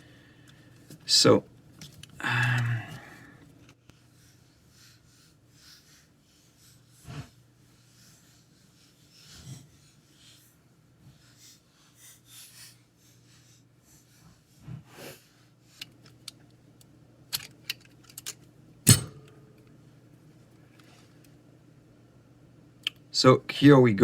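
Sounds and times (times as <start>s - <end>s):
soft rubbing and handling: 3.3s - 16.6s
small metal parts clicking: 17.3s - 19.4s.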